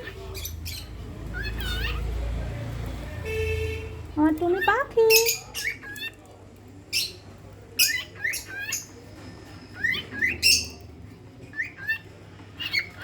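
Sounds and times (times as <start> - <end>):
bird chirping and squawking: 0.0 - 2.4, 4.4 - 6.2, 6.9 - 13.0.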